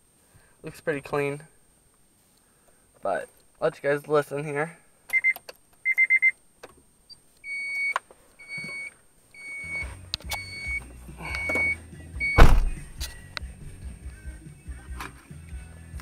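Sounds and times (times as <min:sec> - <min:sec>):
bass-heavy music from car stereo: 0:09.6 - 0:16.0
loud thump: 0:12.4 - 0:12.9.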